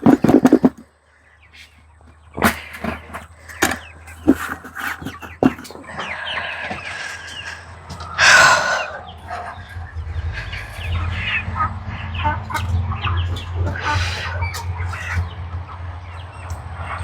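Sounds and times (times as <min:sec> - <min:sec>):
chickens clucking: 0:00.0 - 0:17.0
chicken squawk: 0:01.5 - 0:17.0
low rumble: 0:07.6 - 0:17.0.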